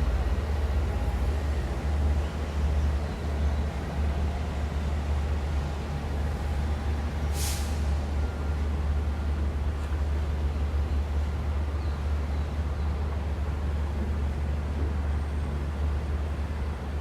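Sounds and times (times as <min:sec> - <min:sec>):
brief high hiss: 0:07.3 - 0:08.0.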